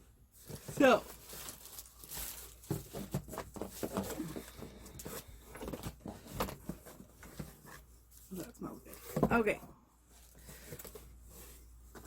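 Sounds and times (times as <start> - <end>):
paper packing rustling: 0.4 - 7.6.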